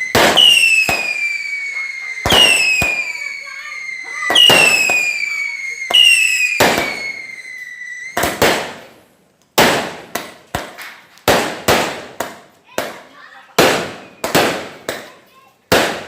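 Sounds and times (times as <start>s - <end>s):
falling firework whistle: 0.0s - 8.4s, 13.8s - 15.0s
fireworks bangs: 0.0s - 16.0s
fireworks cracking: 0.0s - 16.0s.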